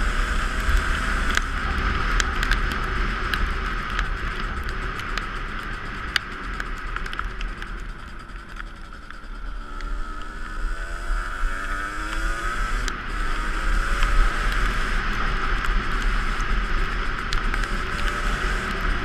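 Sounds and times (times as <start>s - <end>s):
two-stroke dirt bike engine revving: 0.0s - 3.6s, 7.9s - 19.0s
wind rumble on microphone: 0.0s - 19.0s.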